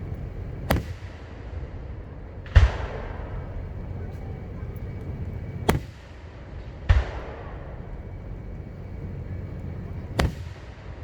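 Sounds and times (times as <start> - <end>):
firework sharp bang: 0.0 - 1.1, 2.2 - 6.0, 6.9 - 10.6.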